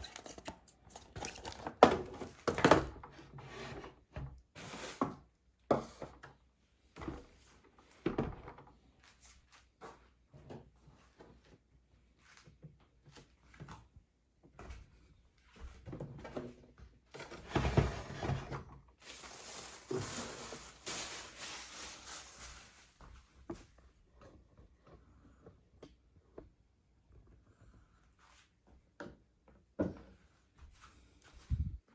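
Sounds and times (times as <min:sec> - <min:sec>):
packaging rustling: 0:19.0 - 0:23.0.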